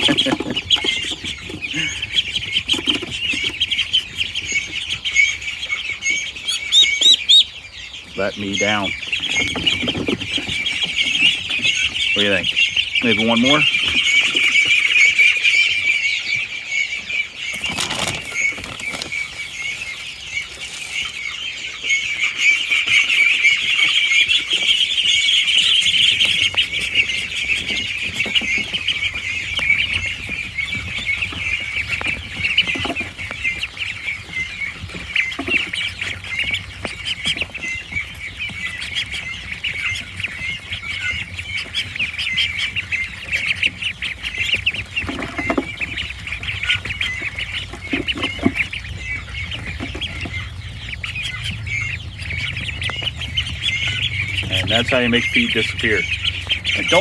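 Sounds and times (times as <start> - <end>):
ducklings peeping: 0.0 - 57.0.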